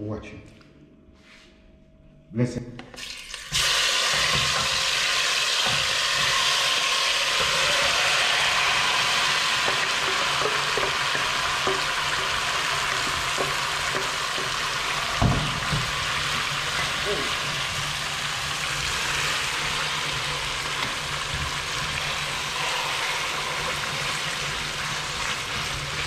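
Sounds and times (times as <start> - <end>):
chicken sizzling in hot oil: 3.0 - 26.0
low thump: 15.2 - 16.0.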